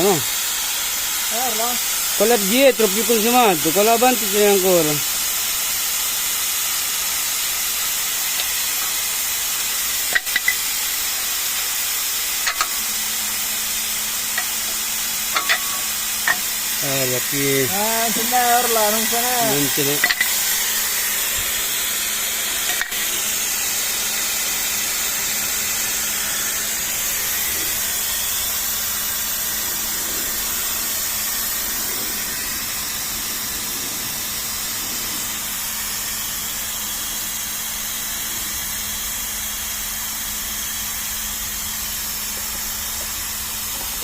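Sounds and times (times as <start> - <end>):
steady hissing: 0.0 - 44.0.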